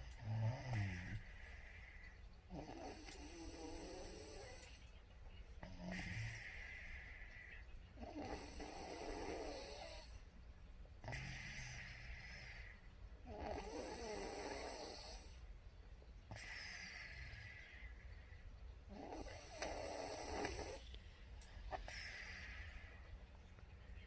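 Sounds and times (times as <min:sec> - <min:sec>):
person snoring: 0:00.2 - 0:01.8.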